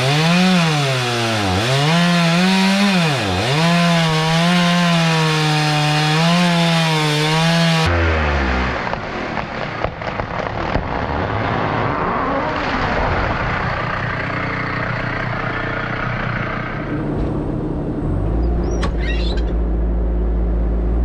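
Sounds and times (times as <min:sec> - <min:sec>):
diesel engine drone: 0:00.0 - 0:21.0
brief high squeaks: 0:18.4 - 0:19.6.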